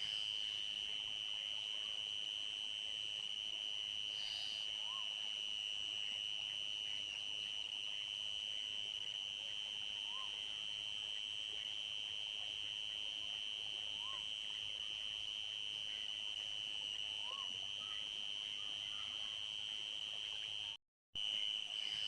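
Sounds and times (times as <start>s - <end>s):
crickets trilling: 0.0s - 22.0s
faint animal calls: 4.2s - 5.2s, 10.0s - 10.4s, 14.0s - 14.3s, 17.2s - 19.4s.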